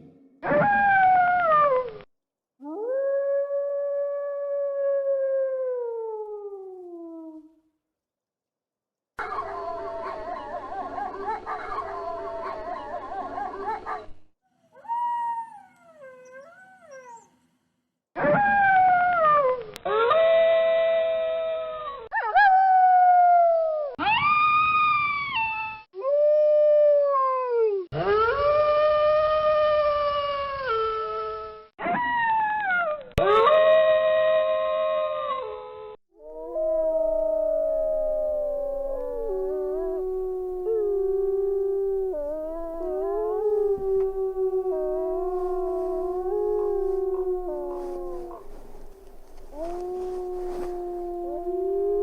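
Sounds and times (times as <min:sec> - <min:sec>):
wolves howling: 0:36.2 - 0:52.0
wolves whining: 0:42.2 - 0:52.0.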